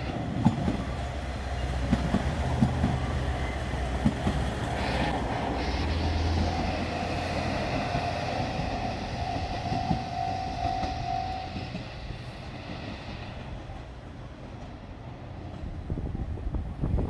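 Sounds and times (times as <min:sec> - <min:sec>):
diesel train passing: 0:00.0 - 0:17.0
steady tone: 0:04.7 - 0:11.6.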